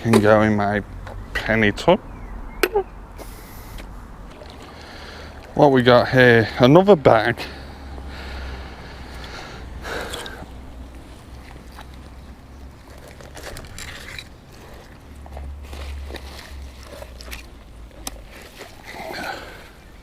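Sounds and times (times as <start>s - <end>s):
plastic bag rustling: 12.0s - 18.8s.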